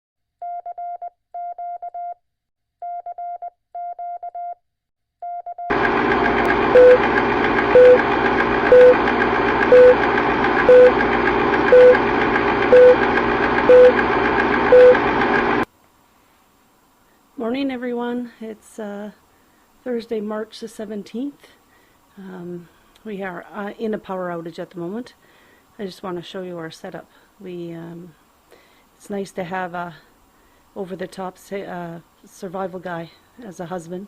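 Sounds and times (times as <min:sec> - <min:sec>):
short lower beep: 0:06.7 - 0:07.0, 0:07.8 - 0:08.0, 0:08.7 - 0:09.0, 0:09.7 - 0:10.0, 0:10.7 - 0:10.9, 0:11.7 - 0:12.0, 0:12.7 - 0:13.0, 0:13.7 - 0:14.0, 0:14.7 - 0:15.0
high electronic beeps: 0:09.7 - 0:10.0, 0:10.7 - 0:10.9, 0:11.7 - 0:12.0, 0:12.7 - 0:13.0, 0:13.7 - 0:14.0, 0:14.7 - 0:15.0.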